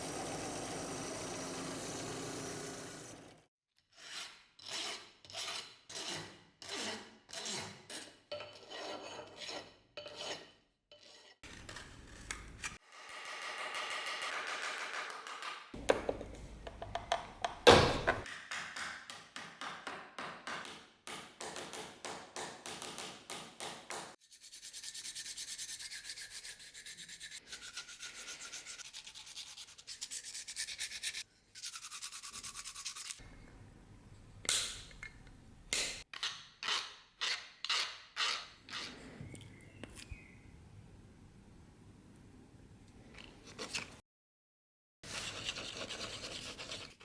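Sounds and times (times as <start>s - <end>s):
hand sanding strokes: 24.2s - 33.2s.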